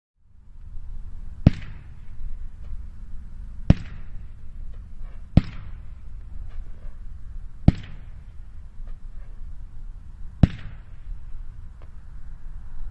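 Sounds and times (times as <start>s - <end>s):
firework launch bangs: 1.4s - 2.2s, 3.6s - 4.4s, 5.2s - 6.0s, 7.6s - 8.4s, 10.4s - 11.2s.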